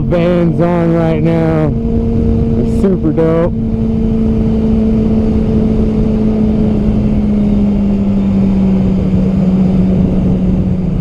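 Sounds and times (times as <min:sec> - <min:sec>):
motorcycle engine cruising: 0:00.0 - 0:11.0
wind rush on microphone: 0:00.0 - 0:11.0.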